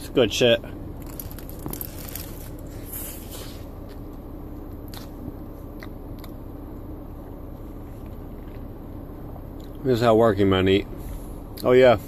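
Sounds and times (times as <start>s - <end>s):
steady low hum: 0.0s - 12.0s
man chewing: 0.9s - 9.8s.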